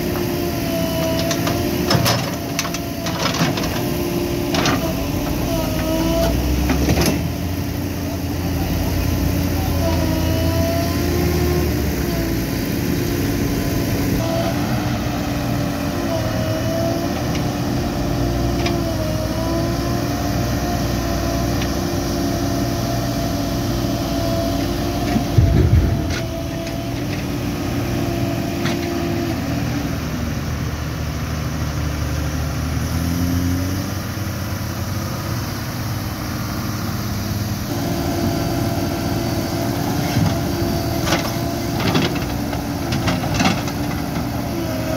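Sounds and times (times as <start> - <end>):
diesel engine running: 0.0 - 44.9
loud low thump: 25.3 - 26.4.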